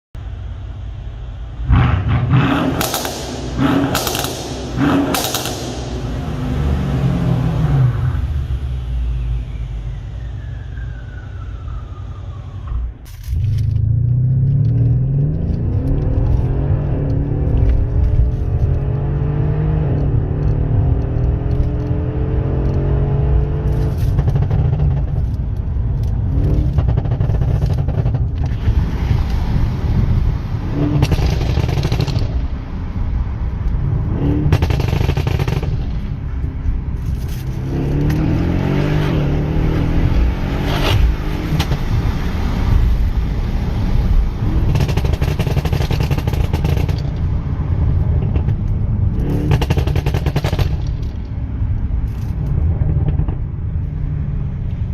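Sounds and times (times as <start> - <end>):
car engine accelerating: 1.5 - 54.9
exhaust pops and bangs: 2.7 - 6.4, 30.8 - 32.6, 34.5 - 36.2, 44.4 - 47.4, 48.1 - 51.4.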